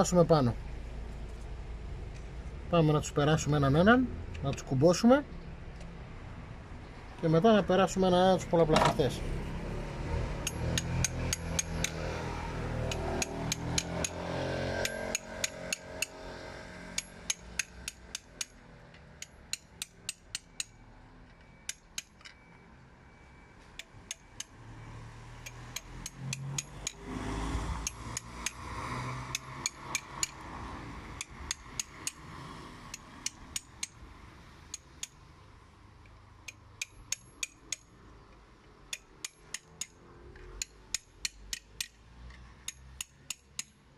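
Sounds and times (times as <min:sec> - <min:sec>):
metallic hand tool clicks: 0:10.4 - 0:12.0, 0:12.8 - 0:14.2, 0:17.0 - 0:18.6, 0:19.2 - 0:20.8, 0:21.6 - 0:22.4, 0:25.4 - 0:27.0, 0:27.8 - 0:28.6, 0:29.3 - 0:30.4, 0:31.2 - 0:32.2, 0:32.9 - 0:34.0, 0:34.7 - 0:35.2, 0:36.0 - 0:37.9, 0:38.9 - 0:43.8.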